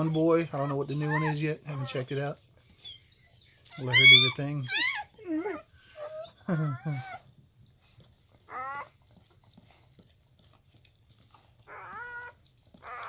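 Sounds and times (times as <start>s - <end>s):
puppies crying in high squeals: 0.0s - 7.2s, 8.5s - 8.9s, 11.7s - 13.0s.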